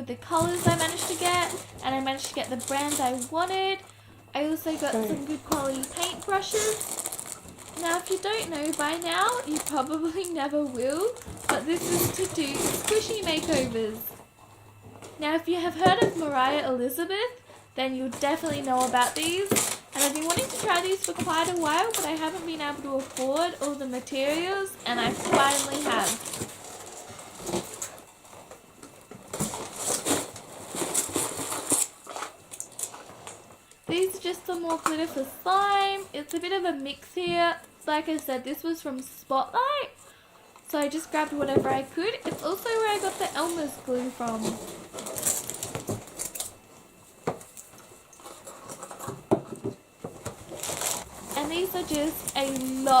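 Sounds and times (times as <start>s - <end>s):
plastic containers clicking and rattling: 0.3s - 3.6s, 18.2s - 26.6s
plastic packaging handled on table: 0.4s - 3.7s, 4.6s - 14.0s, 18.2s - 35.8s, 41.4s - 53.0s.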